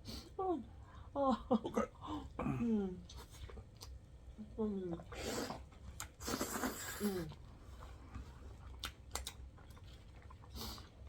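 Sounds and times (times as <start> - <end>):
person chewing food: 3.1 - 4.3, 5.5 - 11.0.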